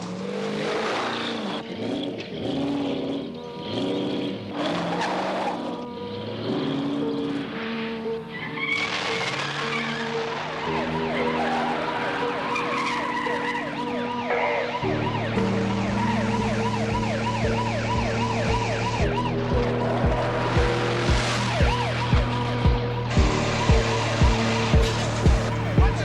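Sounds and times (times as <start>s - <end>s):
film score of sustained tones: 0.0s - 26.0s
police sirens yelping: 8.4s - 26.0s
steady low beat: 16.9s - 26.0s.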